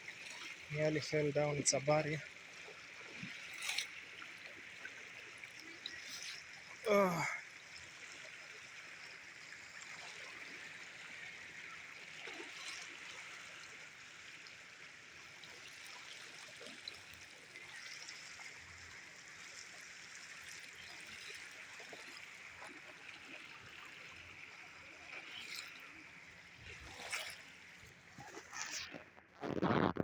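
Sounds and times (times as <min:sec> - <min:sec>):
floodwater flowing: 0:00.0 - 0:07.5, 0:17.8 - 0:29.6.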